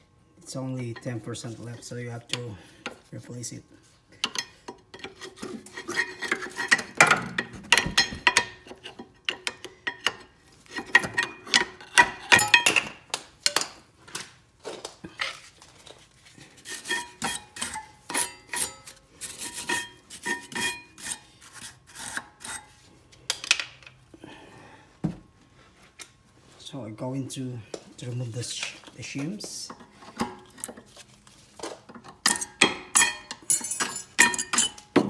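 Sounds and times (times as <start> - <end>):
metal brake pads clinking and scraping: 32.3 - 35.0.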